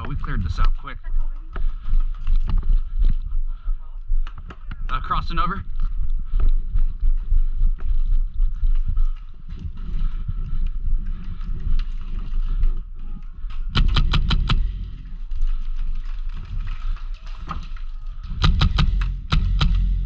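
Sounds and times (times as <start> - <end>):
wind rumble on microphone: 5.6 - 20.0
airsoft gun firing: 13.8 - 15.2, 18.4 - 20.0.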